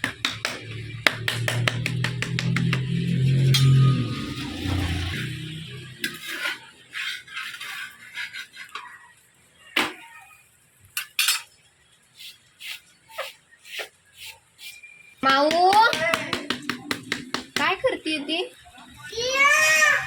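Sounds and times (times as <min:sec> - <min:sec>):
metal utensils clinking: 0:10.9 - 0:11.6.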